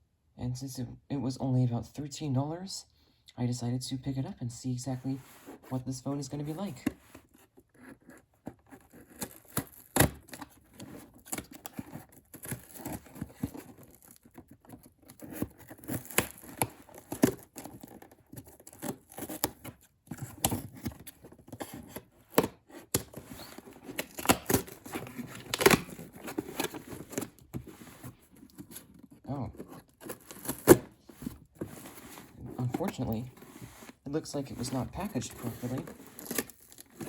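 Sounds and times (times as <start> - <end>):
cardboard box scrapes and rustles: 5.1 - 5.8, 6.4 - 37.0
packing tape tearing: 8.7 - 27.6, 29.6 - 33.6, 34.6 - 37.0.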